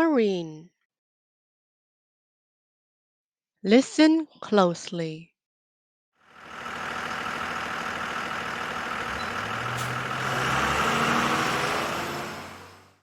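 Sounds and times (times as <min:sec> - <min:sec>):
bus engine running: 0:06.2 - 0:13.0
deeper engine hum: 0:06.2 - 0:13.0.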